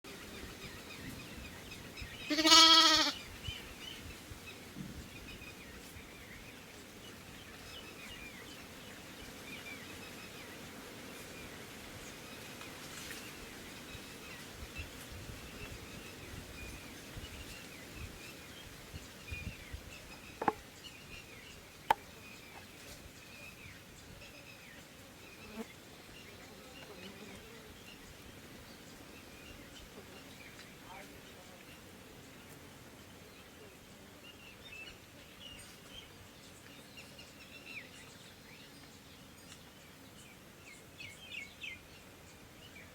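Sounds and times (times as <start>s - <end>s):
goat or sheep bleating: 2.3s - 3.2s.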